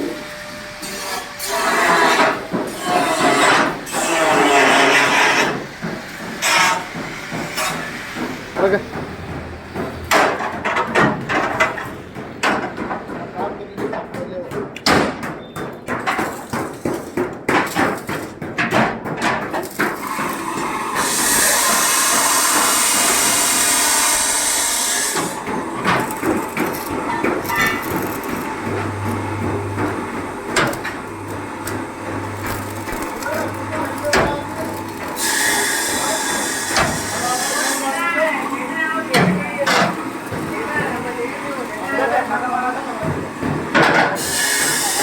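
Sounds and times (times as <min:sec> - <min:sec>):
metal hammering knocks: 0:05.5 - 0:23.4, 0:25.0 - 0:37.4.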